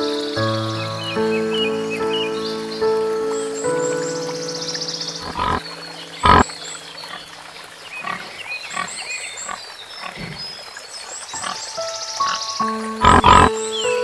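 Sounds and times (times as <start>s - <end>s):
small birds chirping: 0.0s - 14.0s
animal calling: 5.2s - 7.3s, 11.3s - 13.6s.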